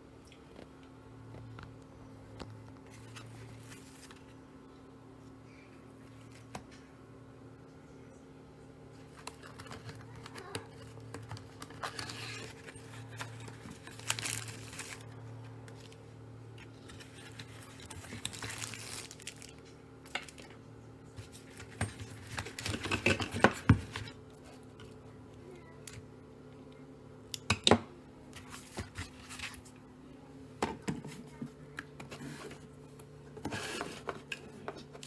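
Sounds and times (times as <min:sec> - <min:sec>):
steady low hum: 0:00.0 - 0:35.0
rustling and crinkling: 0:02.3 - 0:04.4, 0:09.0 - 0:24.8, 0:28.4 - 0:29.8, 0:31.0 - 0:35.0.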